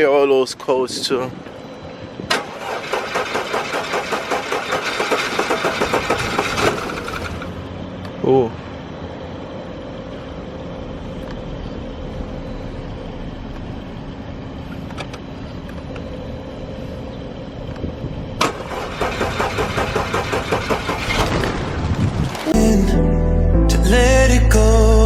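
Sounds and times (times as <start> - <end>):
engine pulsing unevenly: 18.5 - 22.2.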